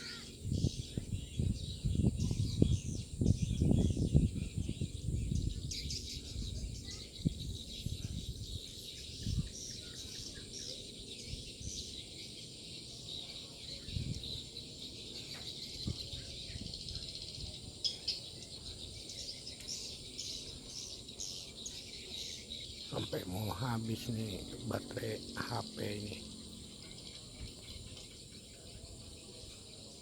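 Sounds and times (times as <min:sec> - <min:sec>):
low rumble on microphone: 0:00.3 - 0:09.6.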